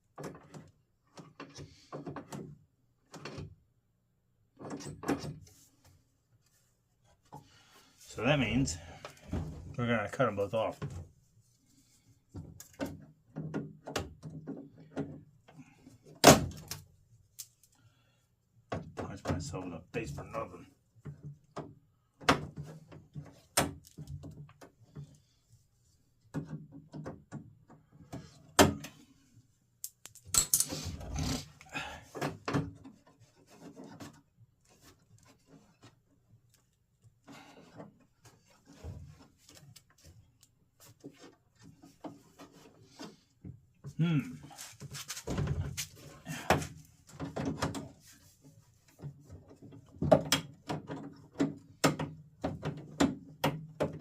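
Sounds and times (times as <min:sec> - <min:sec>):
small metal parts clicking and tapping: 0:29.8 - 0:30.8.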